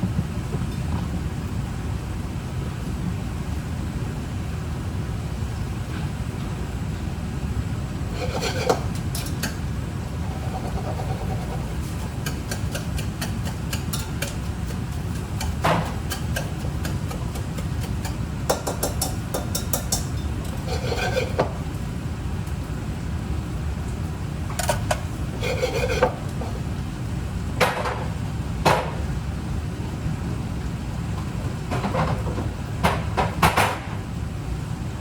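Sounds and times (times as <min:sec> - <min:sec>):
low cooking rumble: 0:00.0 - 0:35.0
utensils knocking: 0:10.2 - 0:21.4.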